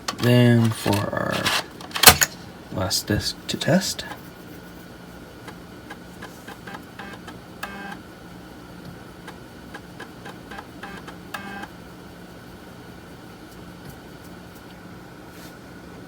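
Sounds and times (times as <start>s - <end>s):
disk drive buzzing seeks: 6.5s - 8.0s, 9.2s - 11.7s.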